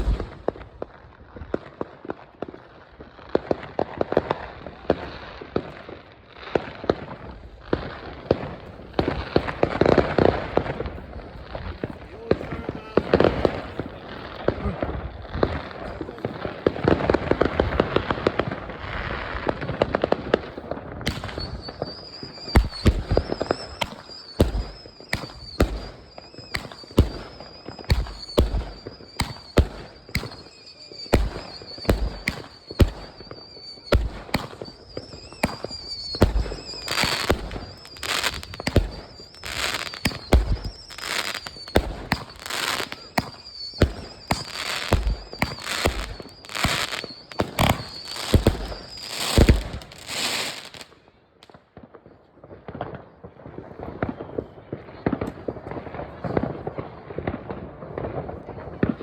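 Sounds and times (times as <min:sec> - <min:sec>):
high firework whistle: 0:00.0 - 0:00.4, 0:21.0 - 0:51.1
fireworks bangs: 0:00.0 - 0:59.0.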